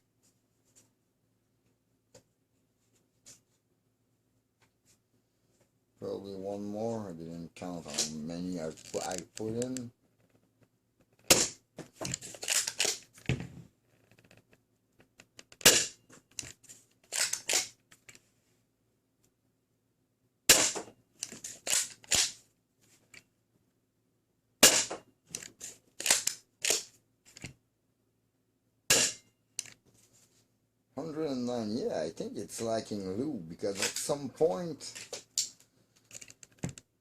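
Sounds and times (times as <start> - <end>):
foam dart blaster shots: 20.5 - 20.8, 24.6 - 25.0.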